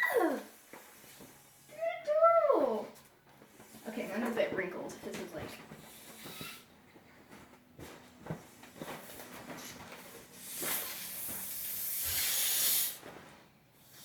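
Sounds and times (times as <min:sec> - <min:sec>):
breathy hiss of blown air: 0:05.8 - 0:06.6, 0:10.4 - 0:13.0.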